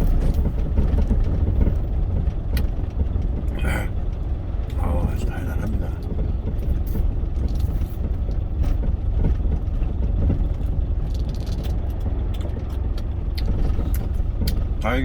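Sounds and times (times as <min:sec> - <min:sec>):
truck engine and road rumble: 0:00.0 - 0:15.0
small clicks and rustles: 0:06.0 - 0:14.7.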